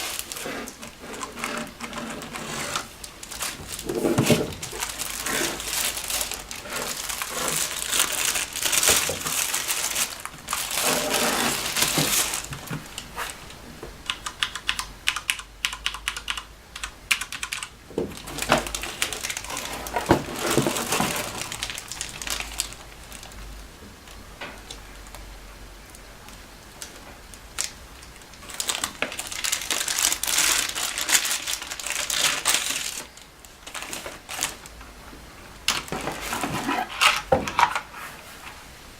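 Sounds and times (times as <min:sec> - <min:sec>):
plastic packaging rustling: 0:00.0 - 0:14.6, 0:17.4 - 0:25.2, 0:26.3 - 0:38.9
mechanical keyboard keys clicking: 0:14.0 - 0:17.7.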